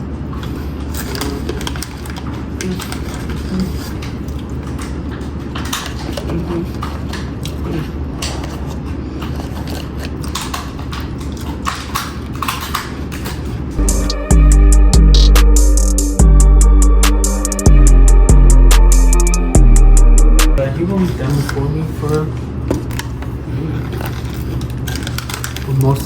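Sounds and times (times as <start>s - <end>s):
crunching chips and nuts: 0.2s - 13.8s, 20.7s - 26.0s
steady low hum: 13.6s - 23.8s
loud music with a beat: 13.8s - 20.6s.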